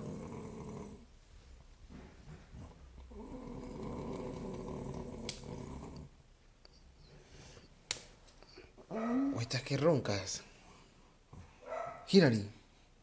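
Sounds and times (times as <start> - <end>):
woman snoring: 0.0 - 1.0, 3.1 - 6.1.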